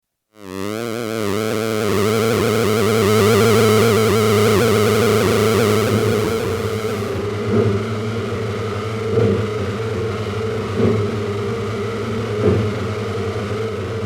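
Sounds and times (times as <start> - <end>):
synthesizer drone: 0.4 - 7.2.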